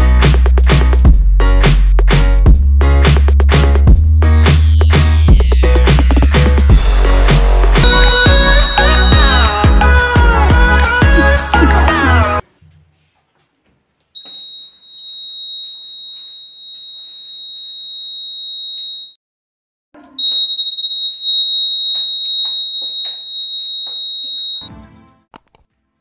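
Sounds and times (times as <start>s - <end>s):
high-pitched alarm buzzer tone: 7.8s - 9.7s, 14.2s - 19.2s, 20.2s - 24.7s.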